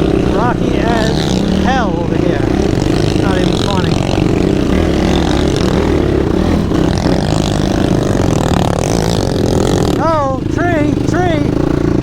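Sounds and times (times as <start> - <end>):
quad engine running: 0.0 - 12.0.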